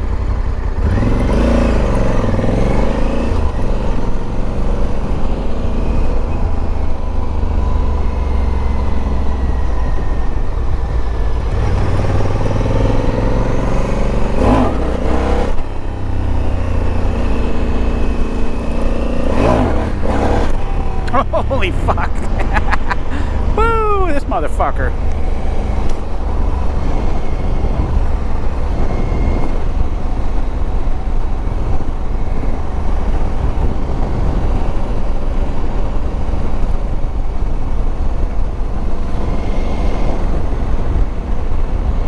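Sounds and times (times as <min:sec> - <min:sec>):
motorcycle engine revving: 0:00.0 - 0:42.0
wind rush on microphone: 0:25.0 - 0:42.0.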